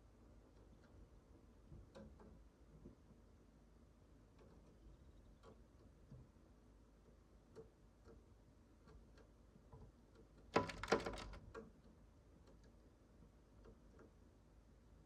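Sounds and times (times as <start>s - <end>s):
rattling clatter of clicks: 10.5s - 11.7s.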